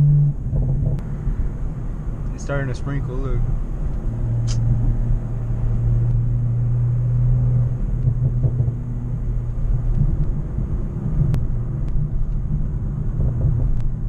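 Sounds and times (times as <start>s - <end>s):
car engine drone while driving: 0.0s - 14.0s
road rumble: 0.0s - 14.0s
sharp click: 4.4s - 4.7s.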